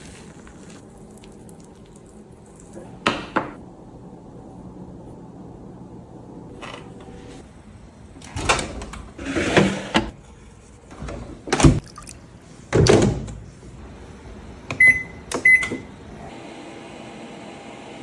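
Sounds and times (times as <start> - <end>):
microwave keypad beeps: 14.8 - 15.9.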